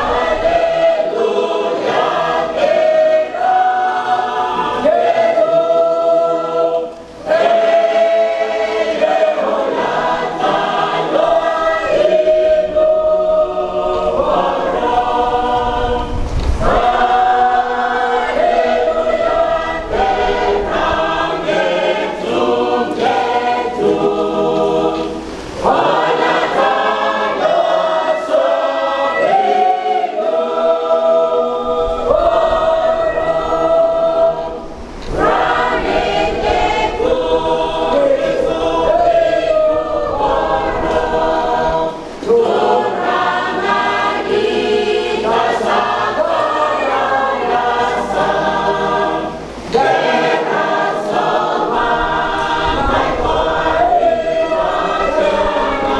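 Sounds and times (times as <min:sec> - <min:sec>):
church choir singing: 0:00.0 - 0:55.9.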